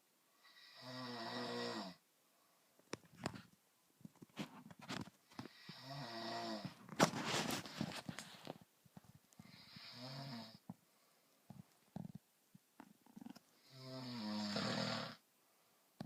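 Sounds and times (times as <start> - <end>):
buzzing snores: 0.4 - 2.0, 5.5 - 6.7, 9.5 - 10.6, 13.6 - 15.2.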